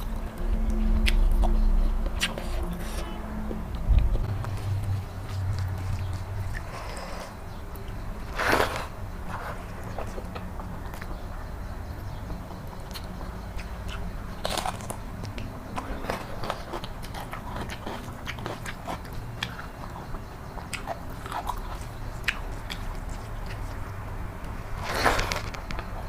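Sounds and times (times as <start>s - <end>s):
steady low hum: 0.0s - 26.0s
close chewing with wet smacks: 12.0s - 26.0s.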